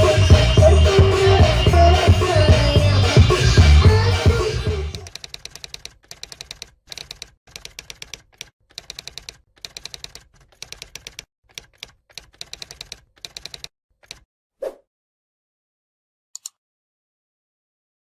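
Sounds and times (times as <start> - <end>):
rapid clicking bursts: 0.0 - 14.2.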